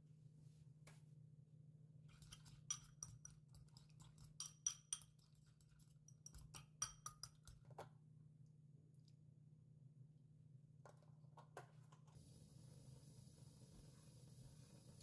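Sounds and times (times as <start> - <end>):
utensils clicking against dishware: 2.1 - 7.6.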